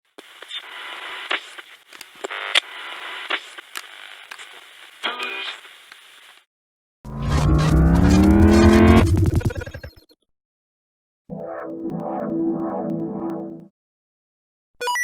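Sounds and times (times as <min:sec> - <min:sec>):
radio static hiss: 0:00.1 - 0:06.5
static crackles and clicks: 0:00.1 - 0:06.5.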